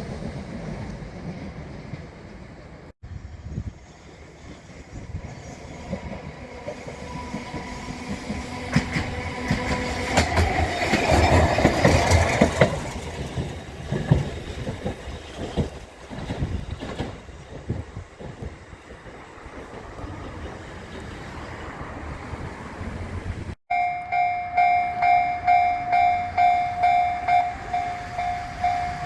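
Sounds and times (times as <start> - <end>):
train wheels clacking over rail joints: 4.4 - 21.8.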